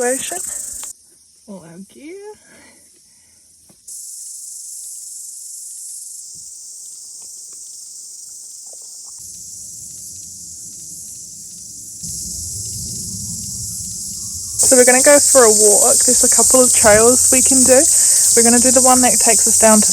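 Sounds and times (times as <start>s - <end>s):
insect chorus shrilling: 0.0s - 1.8s, 3.5s - 19.9s
low rumble: 9.2s - 19.9s.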